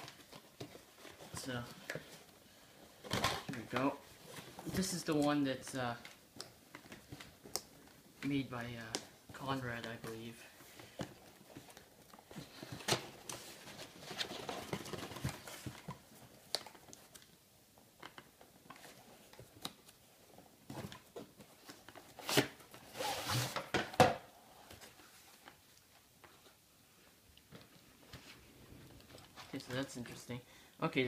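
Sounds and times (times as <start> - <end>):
plastic wrap rustling: 0.0 - 17.4.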